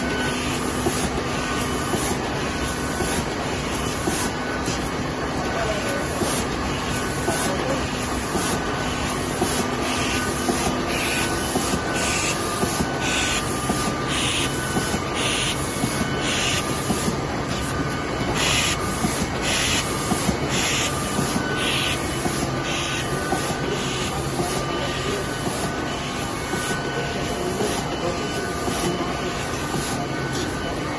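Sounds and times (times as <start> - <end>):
machine hissing bursts: 6.0 - 27.9.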